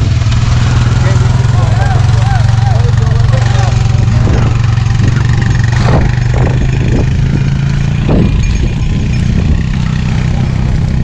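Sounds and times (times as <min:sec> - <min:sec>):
engine humming: 0:00.0 - 0:11.0.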